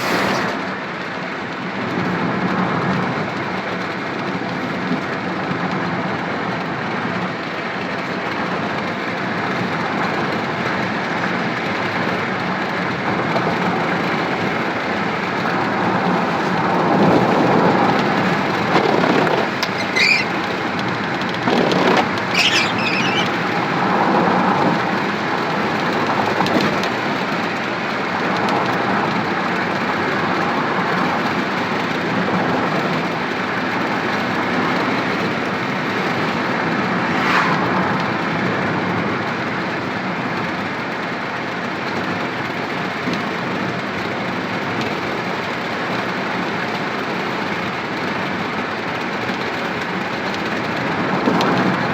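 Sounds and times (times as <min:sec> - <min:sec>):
brief high squeals: 0:00.0 - 0:00.8, 0:19.6 - 0:20.5, 0:21.8 - 0:23.6
vehicle engine and road noise: 0:00.0 - 0:51.9.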